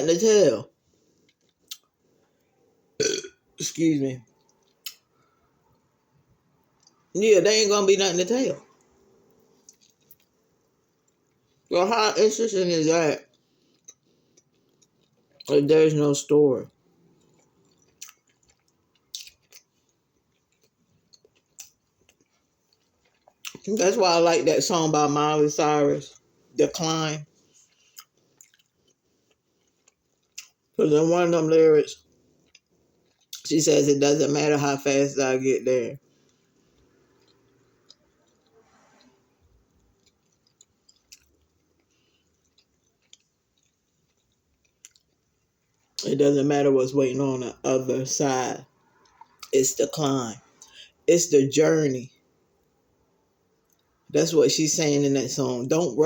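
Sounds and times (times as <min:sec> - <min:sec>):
person chewing food: 0:00.7 - 0:03.2, 0:04.2 - 0:07.1, 0:08.6 - 0:11.7, 0:13.2 - 0:15.6, 0:16.7 - 0:24.2, 0:27.2 - 0:30.8, 0:32.0 - 0:33.5, 0:36.0 - 0:46.0, 0:48.6 - 0:51.0, 0:53.6 - 0:54.1.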